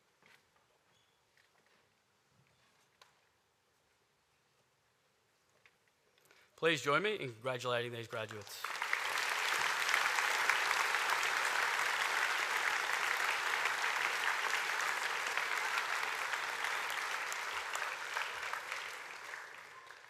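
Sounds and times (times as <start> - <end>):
audience applauding: 8.2 - 20.0.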